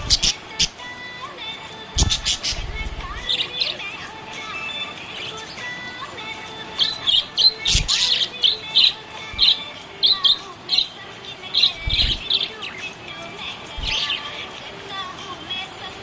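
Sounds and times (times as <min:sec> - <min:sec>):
budgerigar chirping: 0:00.0 - 0:00.8, 0:02.0 - 0:03.8, 0:06.8 - 0:10.9, 0:11.6 - 0:12.6, 0:13.8 - 0:14.3
soft low thumps: 0:02.0 - 0:03.3, 0:11.8 - 0:12.2, 0:13.8 - 0:14.1.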